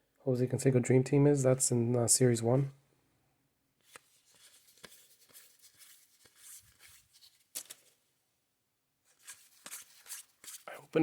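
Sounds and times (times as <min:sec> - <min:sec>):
trading cards sliding and flipping: 0:03.8 - 0:08.0, 0:09.1 - 0:10.7.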